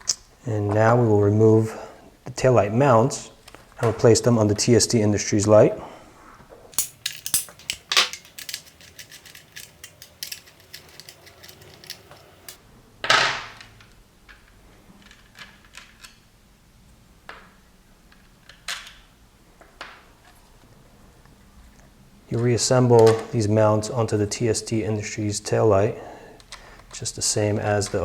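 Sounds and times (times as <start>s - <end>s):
plastic parts clattering: 6.8s - 12.6s.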